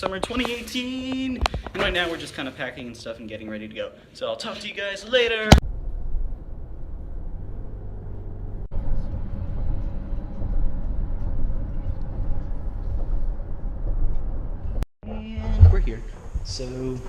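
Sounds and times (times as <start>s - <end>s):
car engine and road rumble: 5.6s - 14.8s.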